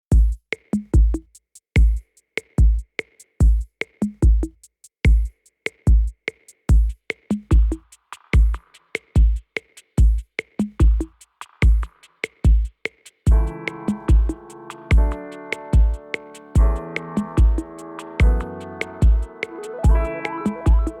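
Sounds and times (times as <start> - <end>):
deep kick drums: 0.1 - 0.4, 13.3 - 15.2, 15.8 - 16.0, 16.6 - 21.0
snare and hi-hat clicks: 0.1 - 21.0
electronic music: 13.4 - 21.0.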